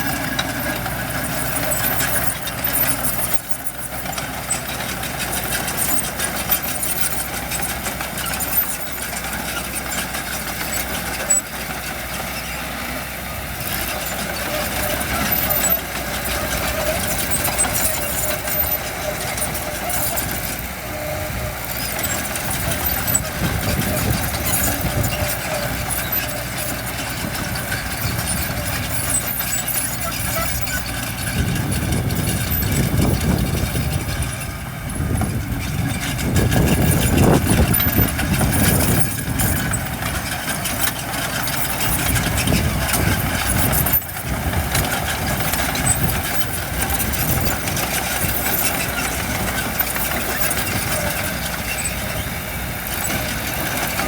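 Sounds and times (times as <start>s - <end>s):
heavy machinery diesel engines: 0.0s - 54.0s
engine revving: 13.5s - 54.0s.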